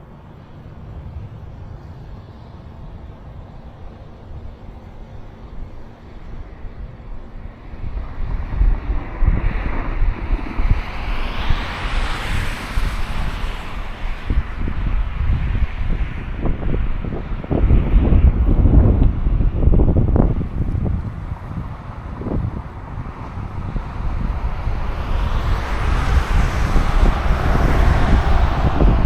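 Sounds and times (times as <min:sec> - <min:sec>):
wind buffeting microphone: 0:00.0 - 0:29.0
vehicle tyre noise passing: 0:07.4 - 0:29.0.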